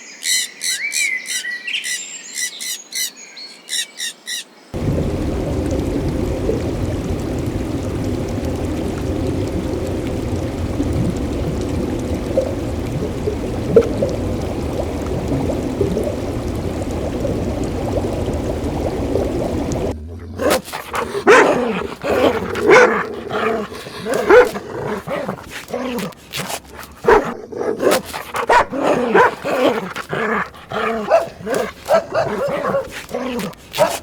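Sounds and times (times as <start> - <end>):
dogs yipping and barking: 20.4 - 34.0.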